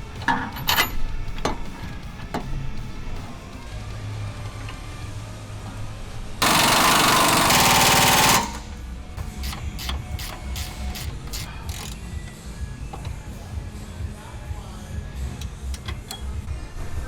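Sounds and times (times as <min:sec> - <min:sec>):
impact wrench rattling: 0:06.4 - 0:13.2.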